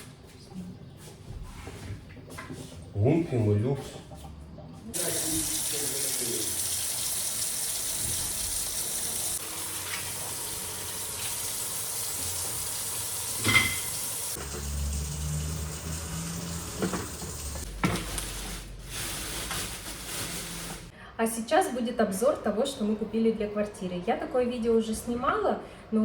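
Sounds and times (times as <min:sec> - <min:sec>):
tap water running into sink: 0:05.0 - 0:17.7
dish clink: 0:13.4 - 0:14.6.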